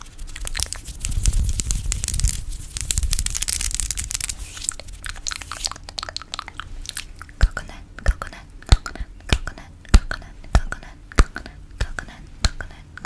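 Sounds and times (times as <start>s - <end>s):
crackling rustle: 0.0s - 5.8s.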